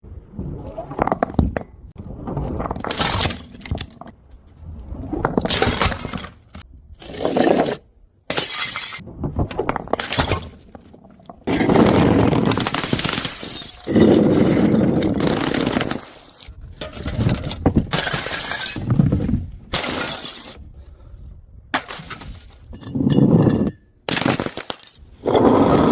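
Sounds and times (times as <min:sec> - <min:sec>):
glass bottles smashing: 0:02.9 - 0:03.8, 0:07.0 - 0:09.0, 0:12.4 - 0:16.5, 0:17.9 - 0:18.8, 0:19.8 - 0:20.6.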